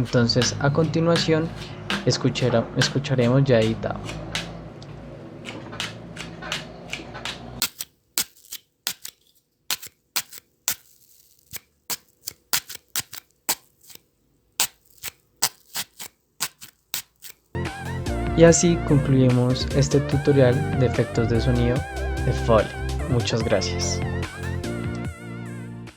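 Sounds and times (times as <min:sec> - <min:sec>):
knife stabbing into carrot: 0:07.6 - 0:14.0, 0:14.6 - 0:17.5.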